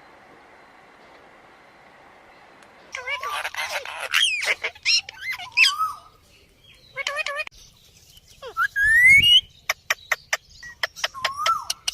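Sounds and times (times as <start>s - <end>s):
parakeet warbling: 2.9s - 6.1s, 6.9s - 7.5s
parakeet sharp chirps: 3.0s - 6.0s.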